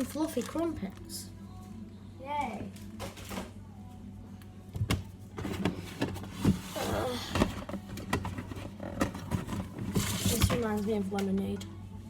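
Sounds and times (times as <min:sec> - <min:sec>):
plastic rustling: 0:00.0 - 0:01.1
packages knocking and clicking: 0:04.8 - 0:10.8.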